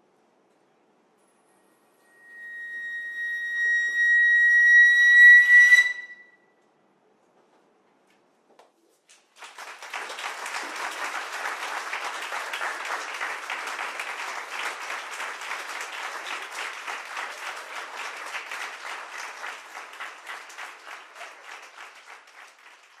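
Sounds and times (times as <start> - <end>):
audience applauding: 9.3 - 23.0.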